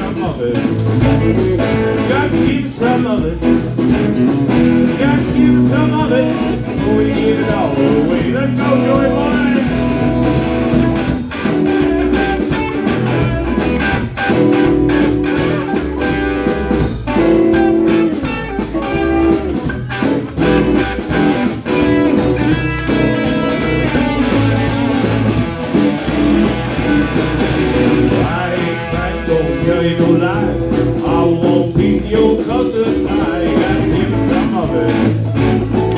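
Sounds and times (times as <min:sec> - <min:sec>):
bass: 0:00.0 - 0:35.9
steady drum beat: 0:00.0 - 0:35.9
electric guitar solo: 0:08.9 - 0:28.2.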